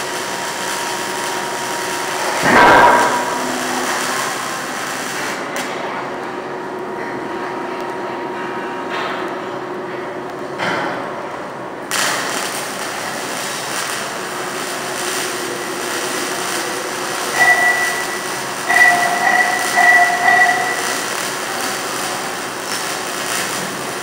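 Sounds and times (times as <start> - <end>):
welding arc crackling hiss: 0.0 - 6.0, 11.8 - 24.0
high whistling tone: 17.4 - 21.0.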